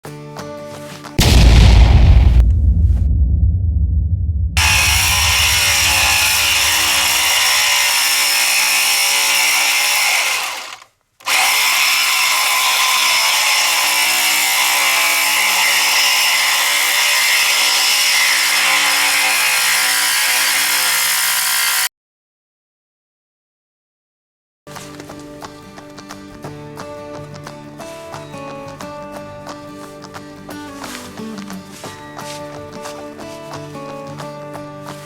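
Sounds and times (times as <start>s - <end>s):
power tool running under load: 4.6s - 21.9s.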